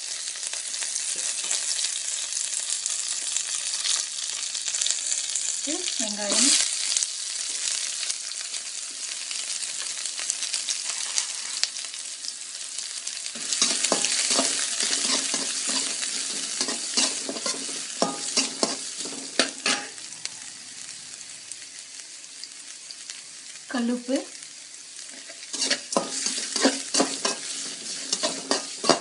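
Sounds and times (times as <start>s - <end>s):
onions sizzling in hot oil: 0.0s - 29.0s
ladle scraping and knocking pan: 13.4s - 19.9s, 25.1s - 29.0s.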